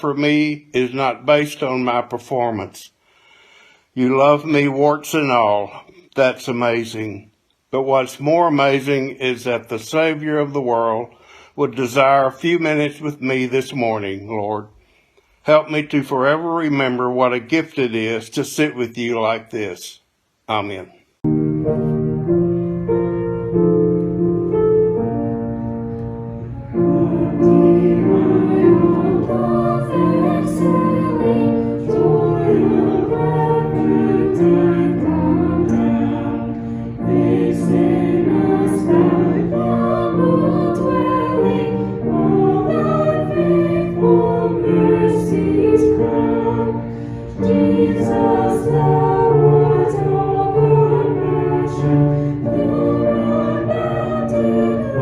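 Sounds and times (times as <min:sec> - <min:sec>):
keyboard or piano accompaniment: 0:21.2 - 0:55.0
voices singing together: 0:26.6 - 0:55.0.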